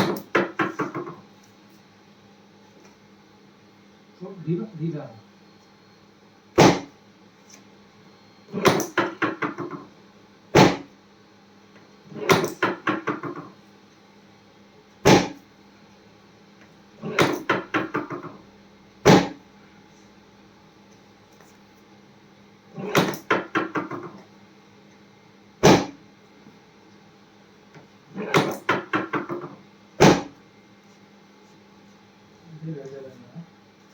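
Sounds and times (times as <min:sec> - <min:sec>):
sharp thump: 0:06.6 - 0:06.9.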